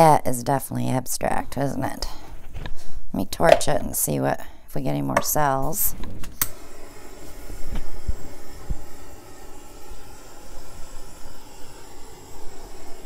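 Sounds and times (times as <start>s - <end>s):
torch flame hissing: 6.3s - 13.0s.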